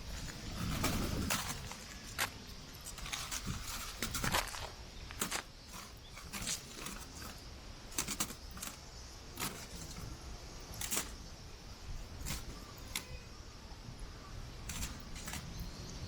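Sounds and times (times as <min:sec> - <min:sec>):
wind gusting on microphone: 0:00.0 - 0:06.4.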